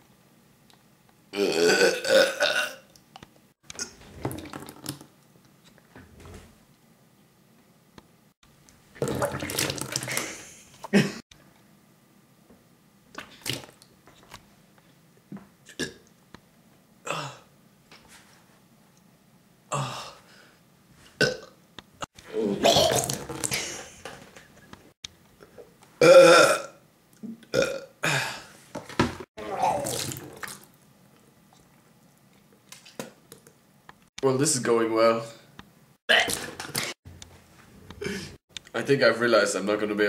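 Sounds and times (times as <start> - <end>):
man burping: 1.4 - 2.9, 15.7 - 16.1, 17.0 - 17.5, 21.2 - 21.5, 22.3 - 24.1, 26.0 - 26.8, 27.5 - 28.5, 36.1 - 36.9.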